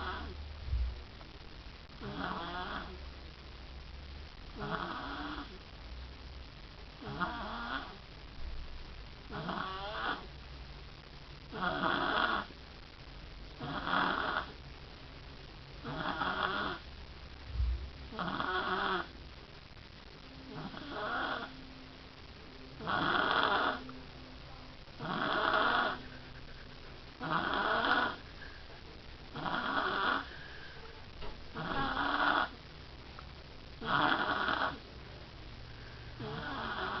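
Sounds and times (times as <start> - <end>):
baby snoring: 0.0 - 0.4, 2.0 - 3.0, 4.5 - 5.6, 7.0 - 8.0, 9.3 - 10.3, 11.5 - 12.5, 13.6 - 14.6, 15.8 - 16.8, 18.1 - 19.2, 20.5 - 21.5, 22.8 - 23.9, 25.0 - 26.1, 27.2 - 28.2, 29.3 - 30.6, 31.5 - 32.6, 33.8 - 34.8, 36.2 - 37.0.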